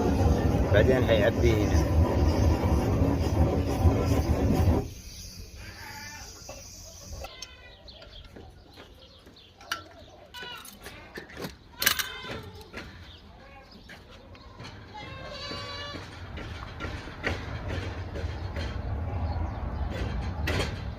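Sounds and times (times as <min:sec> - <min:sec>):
loud steady rushing noise: 0:00.0 - 0:04.9
goats bleating: 0:05.6 - 0:06.5, 0:14.9 - 0:16.1.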